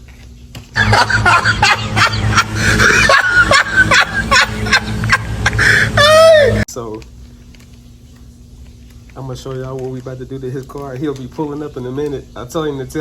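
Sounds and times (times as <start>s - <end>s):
steady low hum: 0.0s - 13.0s
laughing and squawking voices: 0.8s - 6.7s.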